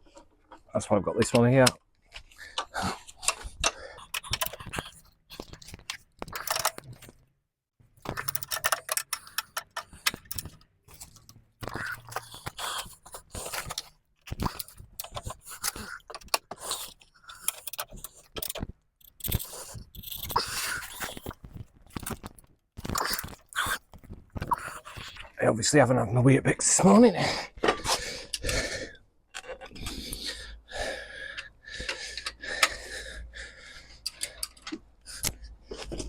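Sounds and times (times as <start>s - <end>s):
ratchet wrench clicking: 8.2s - 10.4s.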